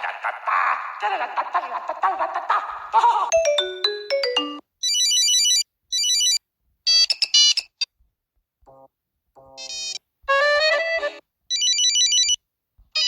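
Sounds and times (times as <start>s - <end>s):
mobile phone ringtones: 3.3s - 7.1s, 11.5s - 12.4s.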